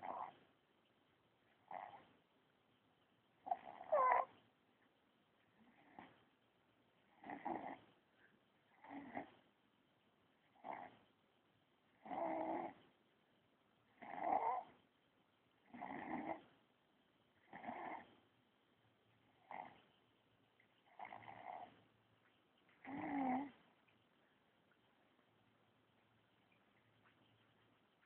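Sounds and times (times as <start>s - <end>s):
quiet breathing: 0.0s - 28.0s
baby snoring: 22.8s - 23.6s.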